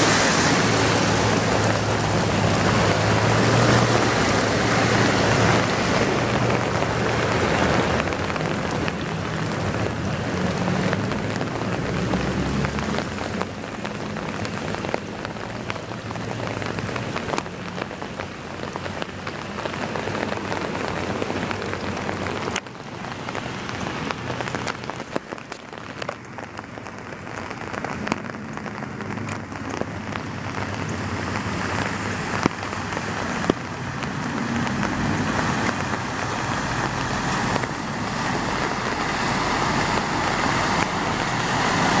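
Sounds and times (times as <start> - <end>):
vehicle passing hum: 0.0 - 14.8, 29.1 - 42.0
heavy rain pouring: 0.0 - 42.0.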